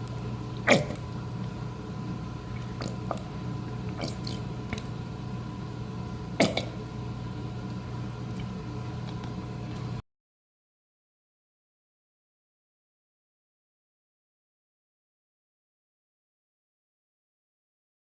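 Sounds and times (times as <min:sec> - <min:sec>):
steady background hum: 0:00.0 - 0:10.0.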